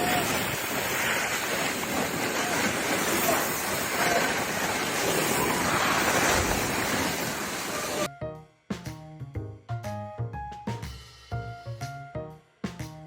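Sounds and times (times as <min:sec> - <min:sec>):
steady rushing noise: 0:00.0 - 0:08.1
music with drum beat: 0:08.7 - 0:13.0.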